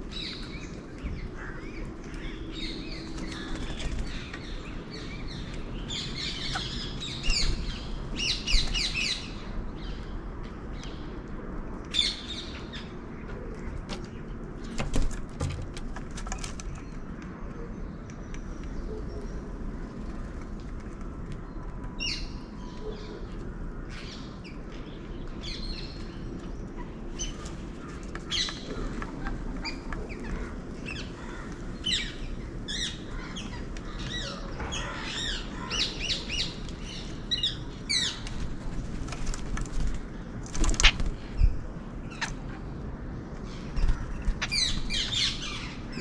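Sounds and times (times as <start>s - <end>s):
birds chirping: 0.0s - 11.2s, 21.4s - 46.0s
outdoor background noise: 0.0s - 46.0s.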